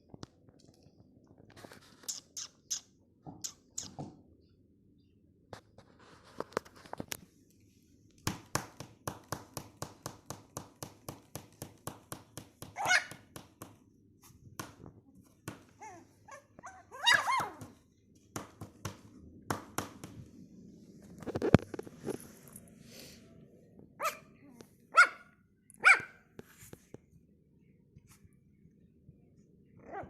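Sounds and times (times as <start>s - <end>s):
puppies squealing: 16.6s - 17.6s.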